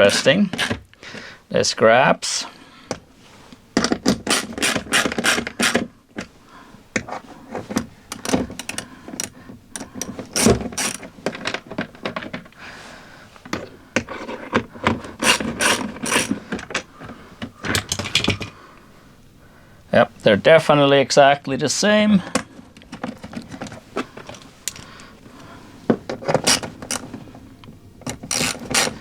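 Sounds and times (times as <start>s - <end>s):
hand ratchet clicking: 0.0s - 0.8s, 3.8s - 5.8s, 8.1s - 11.1s, 15.2s - 16.4s, 26.3s - 27.0s, 28.0s - 29.0s.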